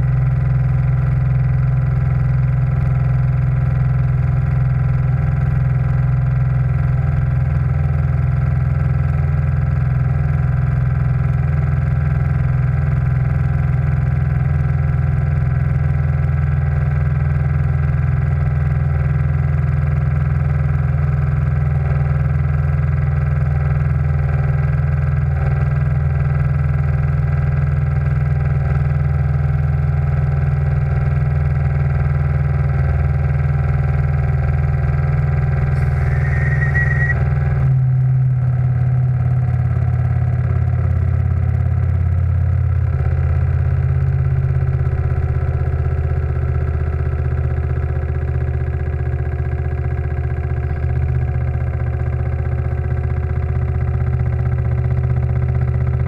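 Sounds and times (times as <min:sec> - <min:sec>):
steam engine running: 0:35.6 - 0:37.3
brief steam hiss: 0:35.7 - 0:37.2.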